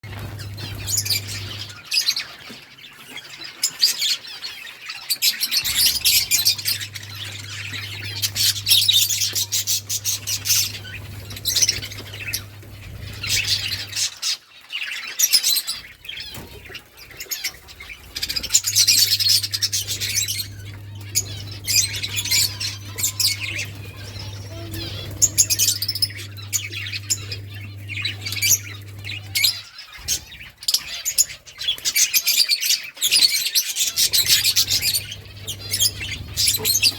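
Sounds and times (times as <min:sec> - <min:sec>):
low steady hum: 0:00.0 - 0:01.8, 0:05.6 - 0:14.0, 0:17.9 - 0:29.7, 0:34.0 - 0:36.9
budgerigars chirping and squawking: 0:00.0 - 0:36.9.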